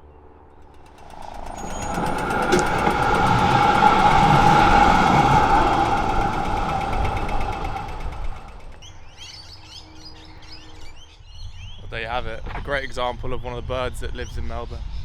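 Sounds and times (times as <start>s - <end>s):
birds chirping: 0.0s - 12.5s
heavy vehicle engine droning: 0.5s - 10.9s.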